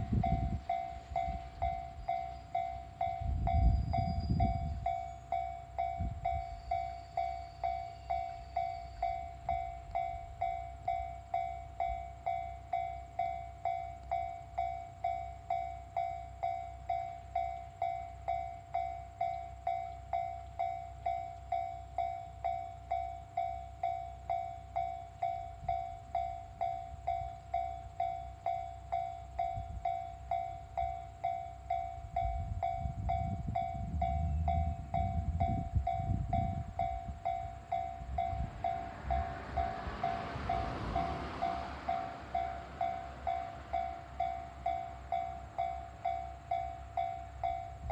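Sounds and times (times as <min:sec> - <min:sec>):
level crossing warning bell: 0:00.0 - 0:47.9
low rumble: 0:32.2 - 0:45.7.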